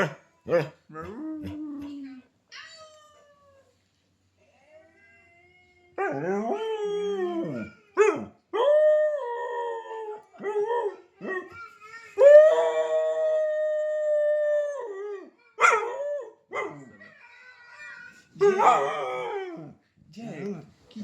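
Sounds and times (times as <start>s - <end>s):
dog howling: 18.4s - 19.8s.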